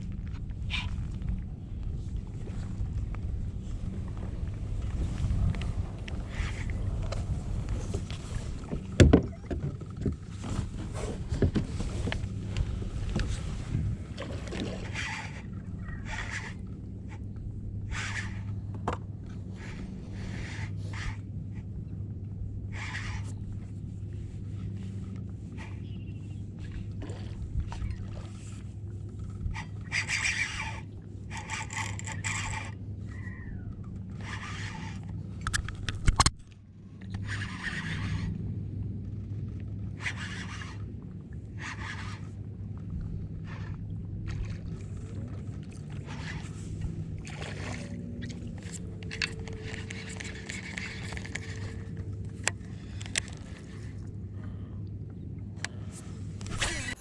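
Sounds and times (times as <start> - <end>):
steady low hum: 0.0 - 57.0
scrapes against plastic hull: 4.0 - 15.3
water splashing: 43.8 - 53.7.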